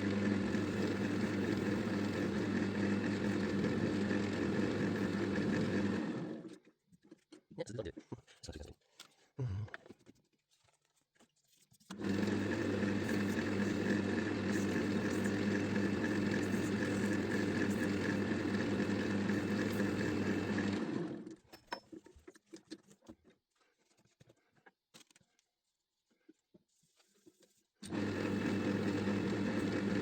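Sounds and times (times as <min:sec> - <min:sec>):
wood lathe motor running: 0:00.0 - 0:06.6, 0:11.9 - 0:21.3, 0:27.8 - 0:30.0.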